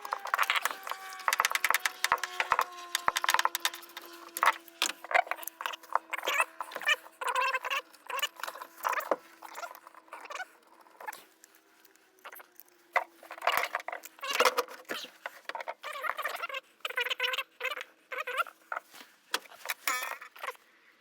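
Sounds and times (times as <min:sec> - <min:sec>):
sharp clicks and light knocks: 0:00.0 - 0:06.1.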